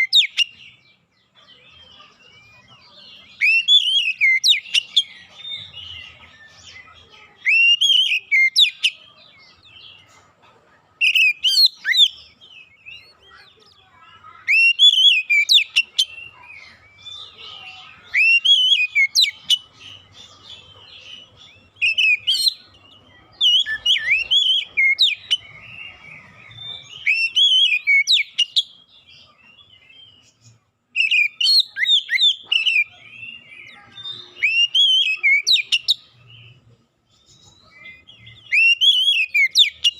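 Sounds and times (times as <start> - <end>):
bird singing whistled phrases: 3.3 - 6.1, 7.4 - 9.0, 11.0 - 13.1, 14.4 - 17.2, 17.9 - 19.7, 21.5 - 28.7, 30.9 - 36.2, 37.6 - 39.9.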